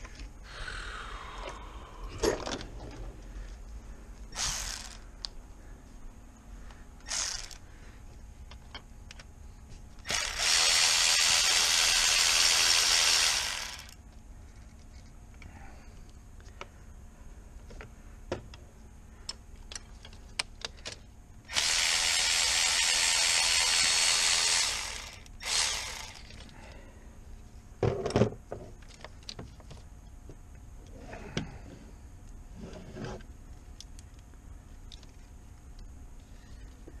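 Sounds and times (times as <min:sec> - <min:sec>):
cordless power tool running: 0:04.4 - 0:05.0, 0:07.0 - 0:07.6, 0:10.0 - 0:14.0, 0:21.5 - 0:26.4.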